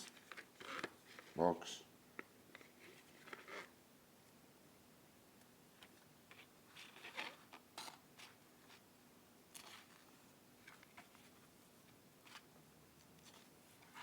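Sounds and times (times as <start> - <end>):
paper and cardboard rustling: 5.8 - 8.8.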